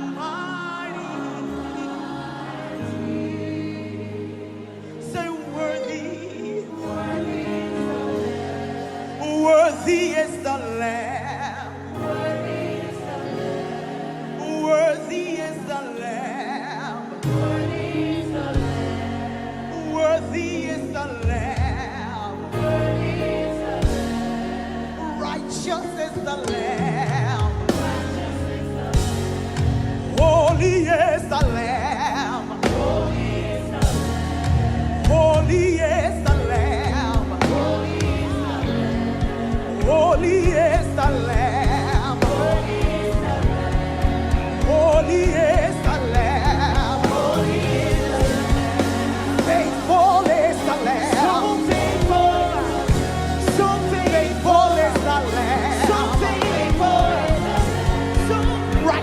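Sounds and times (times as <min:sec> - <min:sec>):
person singing with vibrato: 0:04.9 - 0:08.3
band holding low chords: 0:17.2 - 0:59.0.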